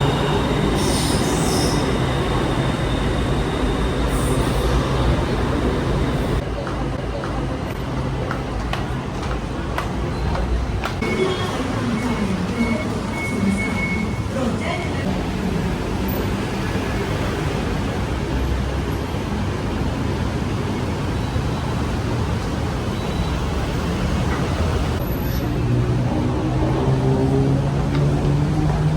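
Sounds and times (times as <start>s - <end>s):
wheels squealing: 0.0s - 6.4s
train rumbling on rails: 0.0s - 28.9s.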